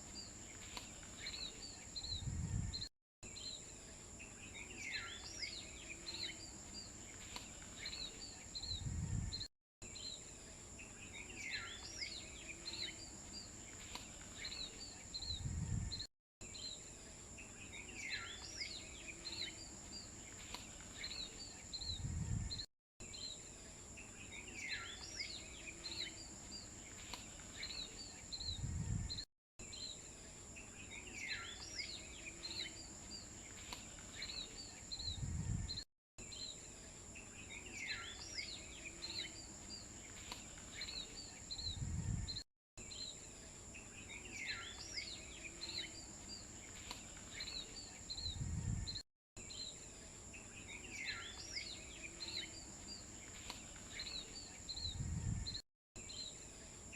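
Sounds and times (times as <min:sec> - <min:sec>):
birds chirping: 0:00.0 - 0:56.4.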